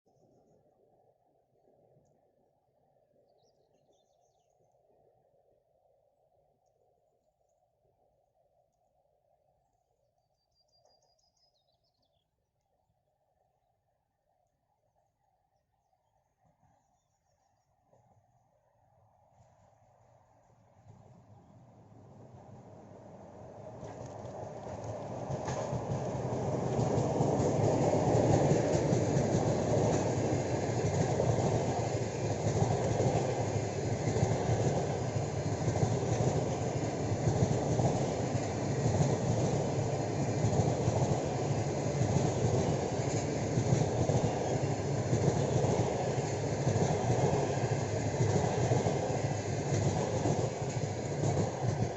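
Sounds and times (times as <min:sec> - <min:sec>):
train wheels rumbling on rail: 0:20.8 - 0:51.9
clickety-clack of rail joints: 0:22.2 - 0:51.9.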